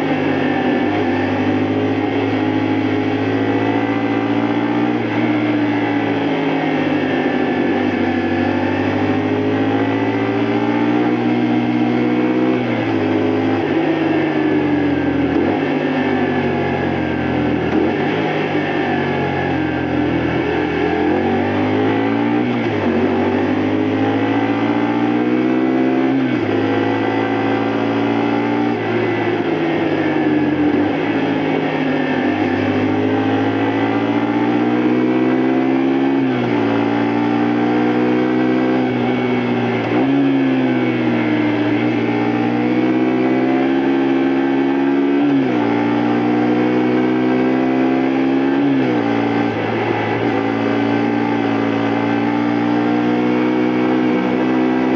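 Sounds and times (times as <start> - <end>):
motorcycle engine revving: 0.0 - 54.9.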